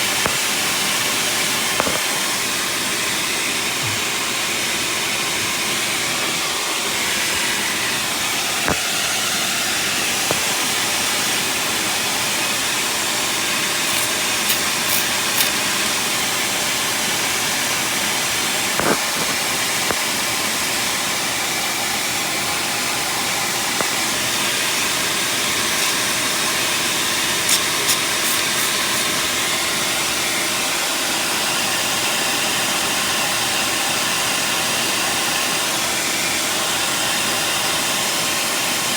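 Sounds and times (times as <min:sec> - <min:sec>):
exhaust leak hiss: 0:05.8 - 0:30.2.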